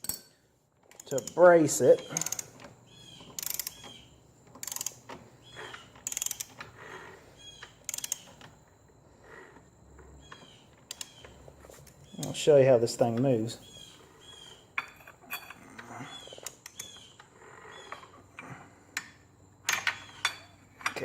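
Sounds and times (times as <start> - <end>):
hand ratchet clicking: 2.1 - 2.6, 3.3 - 3.9, 4.6 - 5.0, 6.0 - 6.6, 7.8 - 8.3.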